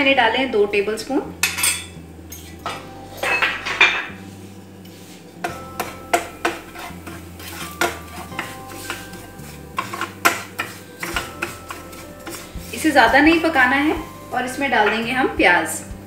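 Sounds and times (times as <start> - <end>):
spoon scraping metal pan: 4.9 - 14.0.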